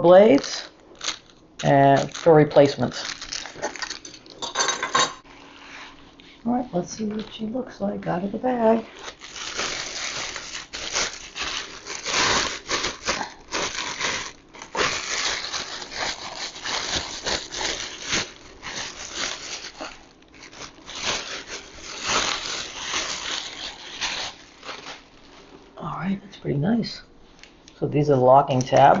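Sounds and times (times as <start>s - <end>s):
plastic bag crinkling: 0.1s - 4.5s, 8.4s - 25.8s.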